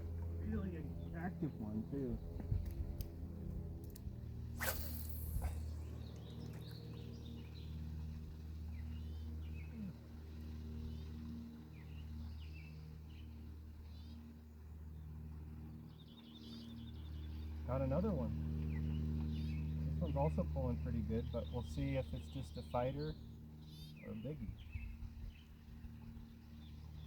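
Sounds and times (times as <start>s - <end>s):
steady low hum: 0.0s - 27.0s
brief sharp noise: 4.6s - 5.7s.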